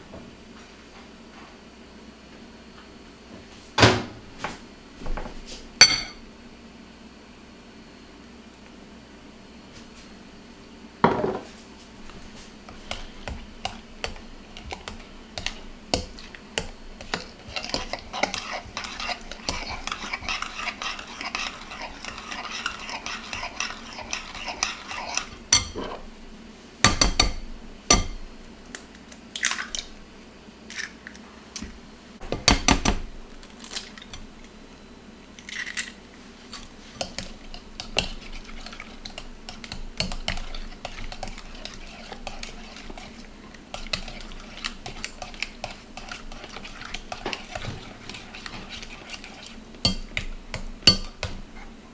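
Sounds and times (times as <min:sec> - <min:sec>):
utensils and dishes clinking: 0:05.8 - 0:06.2.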